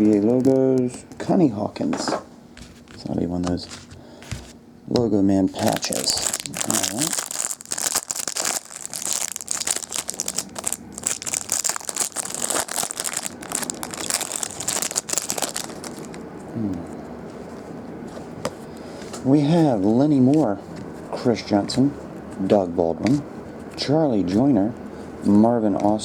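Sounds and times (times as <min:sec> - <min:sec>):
wrapping crinkling and tearing: 0:05.5 - 0:16.2.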